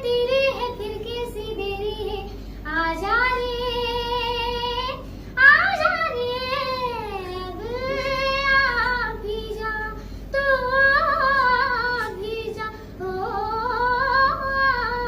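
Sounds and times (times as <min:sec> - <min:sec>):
girl singing unaccompanied: 0:00.0 - 0:15.0.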